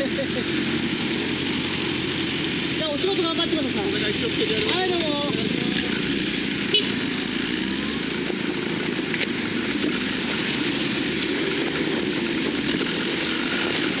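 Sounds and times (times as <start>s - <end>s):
engine drone: 0.0s - 14.0s
road noise hiss: 0.0s - 14.0s.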